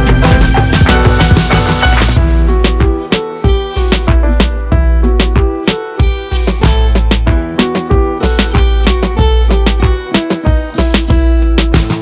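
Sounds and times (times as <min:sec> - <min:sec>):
background music with heavy bass: 0:00.0 - 0:12.0.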